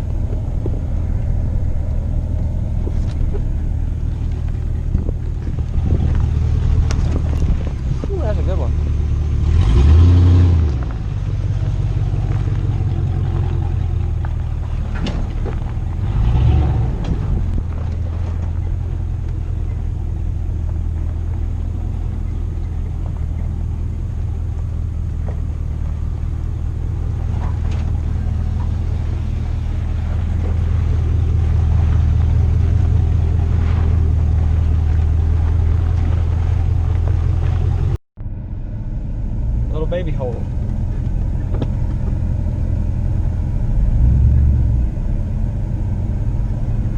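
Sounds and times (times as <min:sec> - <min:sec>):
truck engine running: 0:00.0 - 0:46.9.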